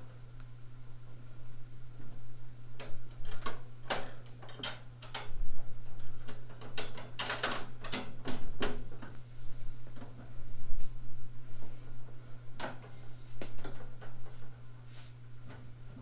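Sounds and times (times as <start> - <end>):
steady low hum: 0.0 - 16.0
metal parts clicking and tapping: 2.8 - 5.4, 6.0 - 9.1.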